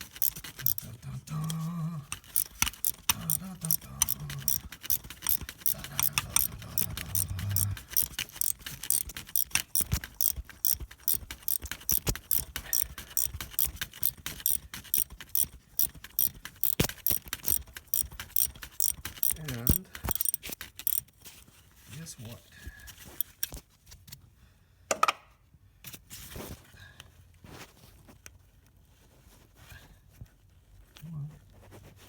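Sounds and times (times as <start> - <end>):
ratchet wrench clicking: 0.0 - 21.1, 23.1 - 23.6.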